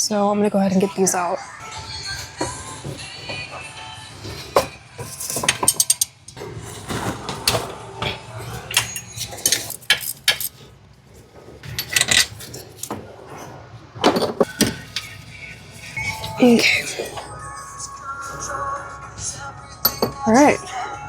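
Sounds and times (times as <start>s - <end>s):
hand tools clinking on metal: 4.2s - 10.7s, 11.6s - 13.0s, 14.0s - 18.6s, 19.2s - 20.8s.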